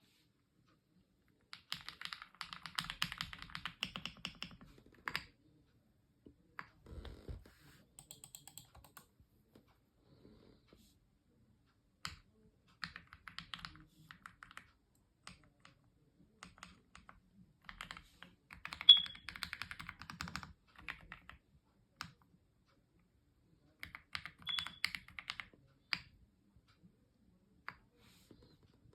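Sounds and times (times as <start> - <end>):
mechanical keyboard typing: 1.5 - 5.3, 8.0 - 9.1, 12.8 - 15.8, 16.4 - 21.4, 23.8 - 26.1.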